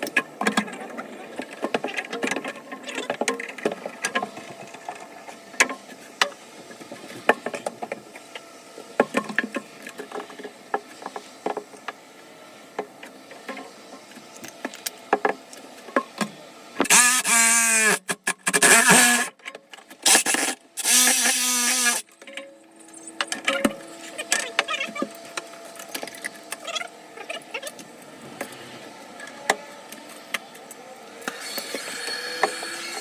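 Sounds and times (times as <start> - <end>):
small electric motor spinning up: 16.8 - 19.3, 20.0 - 22.1, 31.2 - 33.0.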